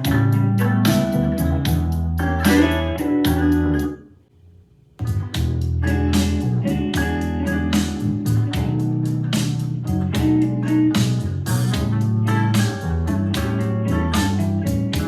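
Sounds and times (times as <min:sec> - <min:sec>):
heavy bass line: 0:00.0 - 0:04.0, 0:05.0 - 0:15.0
song on portable speaker: 0:00.0 - 0:04.0
guitar: 0:00.0 - 0:04.2, 0:05.0 - 0:15.0
steady drum beat: 0:05.0 - 0:15.0.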